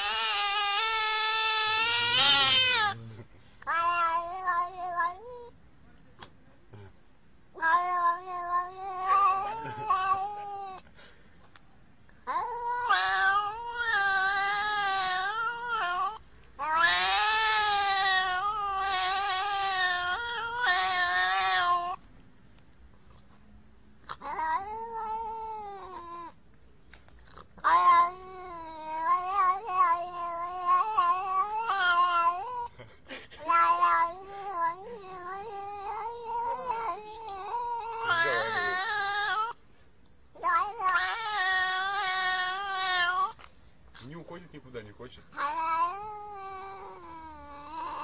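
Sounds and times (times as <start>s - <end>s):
cat yowling: 0.0s - 5.6s, 7.5s - 10.8s, 12.2s - 22.0s, 24.0s - 26.4s, 27.6s - 32.8s, 33.4s - 39.6s, 40.3s - 43.4s, 45.3s - 48.0s.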